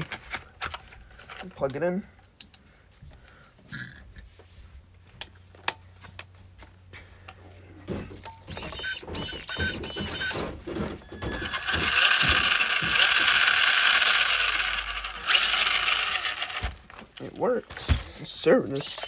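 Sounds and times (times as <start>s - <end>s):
toy car motor whining: 8.5s - 16.8s, 18.7s - 19.0s.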